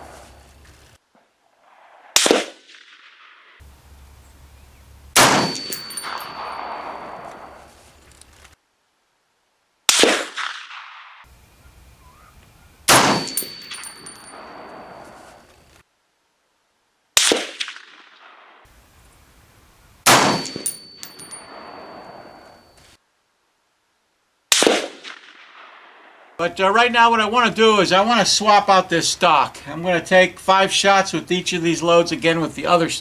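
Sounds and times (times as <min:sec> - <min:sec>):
rifle shots echoing: 0:01.7 - 0:07.8, 0:09.9 - 0:15.5, 0:17.2 - 0:22.7, 0:24.5 - 0:26.4.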